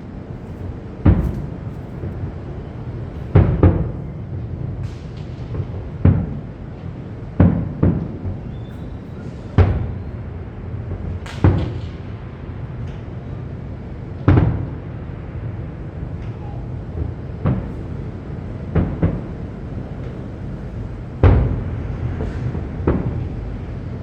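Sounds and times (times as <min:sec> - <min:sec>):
steady background din: 0:00.0 - 0:12.2
fireworks booming: 0:00.0 - 0:12.9, 0:15.9 - 0:24.0.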